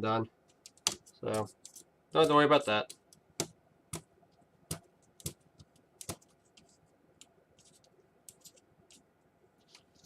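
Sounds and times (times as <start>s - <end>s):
light scratching on plastic: 4.3s - 10.0s.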